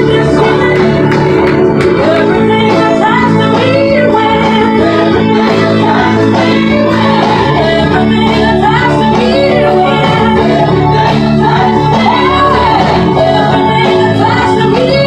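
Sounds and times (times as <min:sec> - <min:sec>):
electronic organ chords: 0:00.0 - 0:15.0
voices singing: 0:00.0 - 0:15.0.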